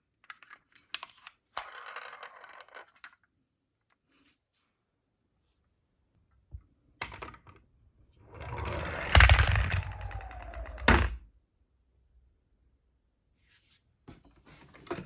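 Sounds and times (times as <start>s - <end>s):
toy car rattling down a slope: 1.1s - 3.2s, 8.3s - 11.2s.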